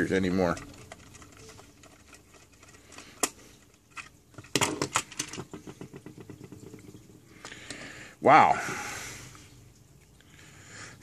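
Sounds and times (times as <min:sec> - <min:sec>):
plastic case clicking and rattling: 0:00.4 - 0:07.1.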